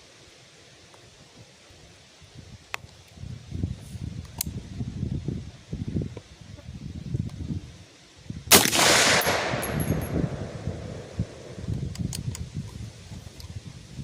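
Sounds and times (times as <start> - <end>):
rifle shot echoing: 8.5 - 11.7.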